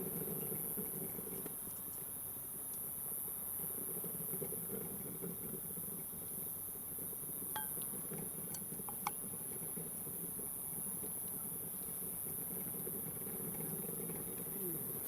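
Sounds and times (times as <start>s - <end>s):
utensils clinking: 7.6s - 7.9s.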